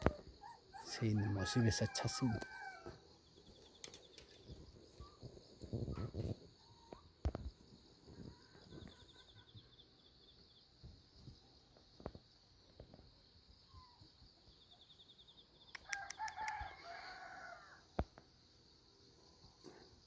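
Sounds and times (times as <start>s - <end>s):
rooster crowing: 1.0s - 3.0s, 15.9s - 17.9s
sharp clicks: 15.7s - 16.6s.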